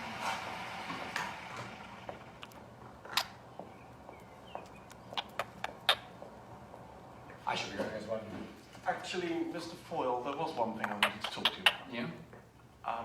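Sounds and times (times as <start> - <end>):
parrot squeak: 10.8 - 11.9.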